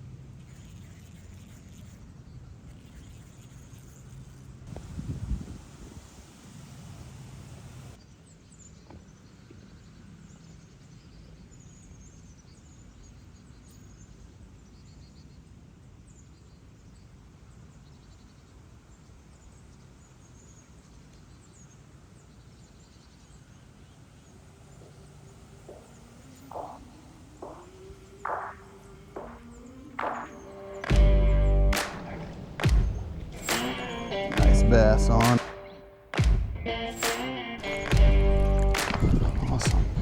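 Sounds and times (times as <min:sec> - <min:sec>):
distant bird chirps: 0:23.5 - 0:40.0
insect-like trills: 0:24.3 - 0:34.4.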